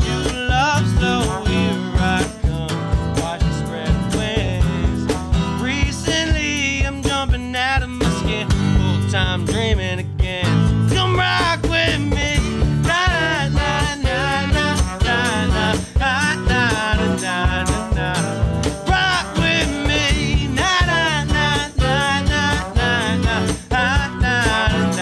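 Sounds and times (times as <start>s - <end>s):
bass guitar: 0.0s - 25.0s
drum beat with cymbals: 0.0s - 25.0s
keys: 10.9s - 25.0s.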